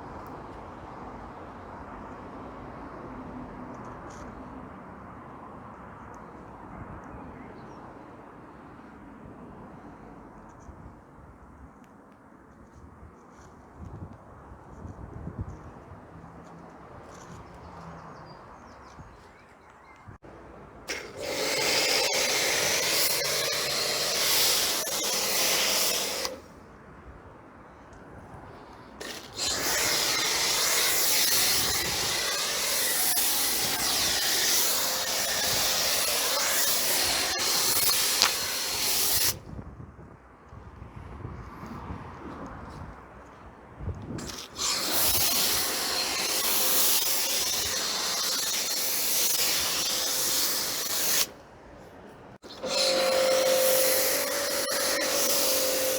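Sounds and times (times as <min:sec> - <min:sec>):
pressure washer spraying water: 0:20.9 - 0:26.4, 0:29.0 - 0:39.4, 0:44.2 - 0:51.3, 0:52.4 - 0:55.9.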